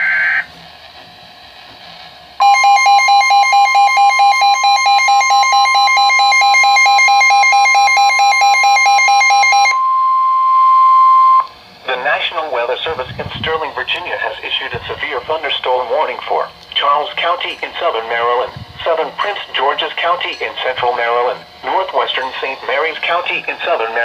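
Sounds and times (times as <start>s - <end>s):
fast pulsing electronic beep: 2.4s - 11.4s
steady high attention tone: 2.4s - 24.0s.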